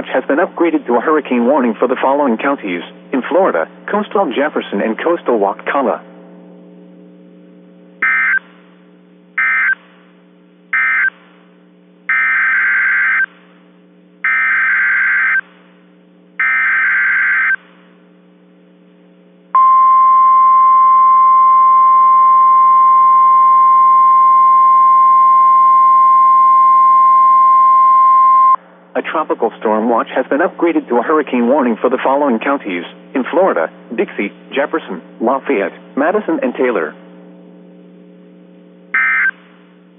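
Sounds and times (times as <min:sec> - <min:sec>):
steady alarm tone: 0:08.0 - 0:08.5, 0:09.4 - 0:09.8, 0:10.7 - 0:11.2, 0:12.1 - 0:13.3, 0:14.2 - 0:15.6, 0:16.4 - 0:17.7, 0:19.6 - 0:28.6, 0:38.9 - 0:39.4.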